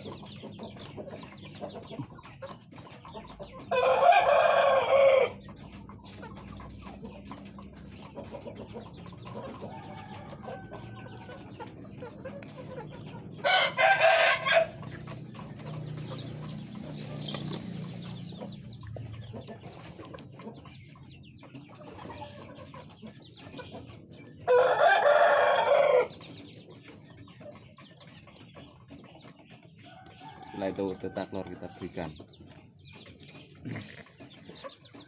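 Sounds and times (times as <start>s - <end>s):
rooster crowing: 3.7s - 5.4s, 13.4s - 14.8s, 24.5s - 26.2s.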